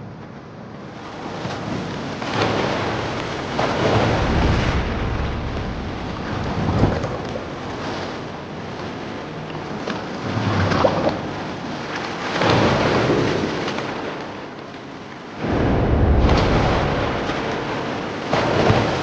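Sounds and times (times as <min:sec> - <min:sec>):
deep rumbling swells: 0:02.7 - 0:08.8, 0:15.4 - 0:19.0.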